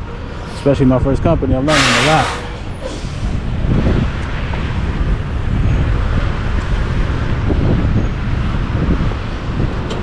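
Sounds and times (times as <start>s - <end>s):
truck engine rumbling: 0.0s - 10.0s.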